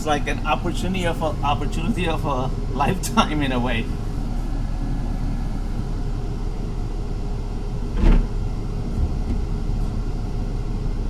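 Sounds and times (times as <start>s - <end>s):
bus rumbling from inside: 0.0s - 11.0s
loud clunk: 7.9s - 8.4s.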